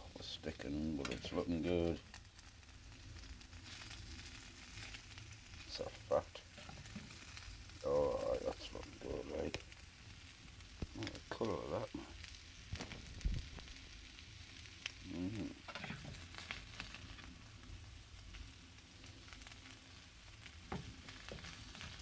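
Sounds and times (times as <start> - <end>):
food sizzling in a pan: 0.0 - 22.0
utensil scraping a pan: 6.5 - 7.5, 15.6 - 16.7.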